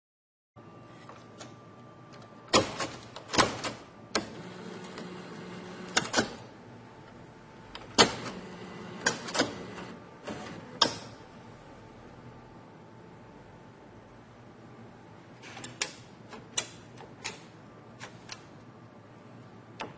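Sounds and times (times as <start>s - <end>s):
mechanism clacks and clunks: 1.0s - 5.1s, 5.9s - 6.4s, 7.7s - 8.4s, 9.0s - 11.2s, 15.4s - 18.7s.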